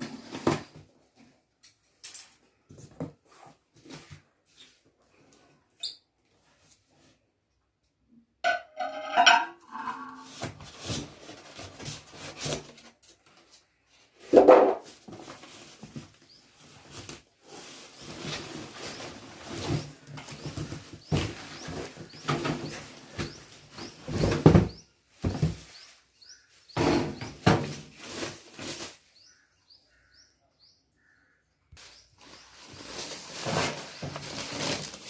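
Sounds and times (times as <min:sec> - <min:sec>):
cardboard rustling and scraping: 0:00.0 - 0:01.3, 0:09.8 - 0:13.6, 0:14.6 - 0:29.0, 0:31.8 - 0:35.0.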